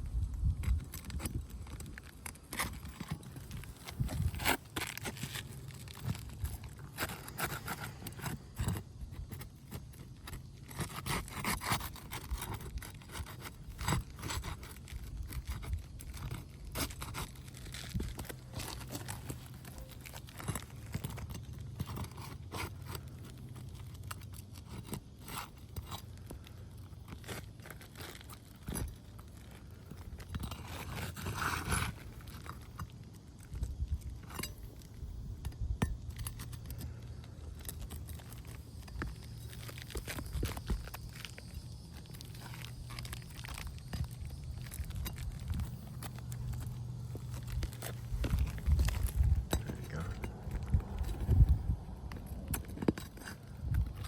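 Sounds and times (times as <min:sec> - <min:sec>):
roof shingles scraping and crunching: 0:00.0 - 0:54.0.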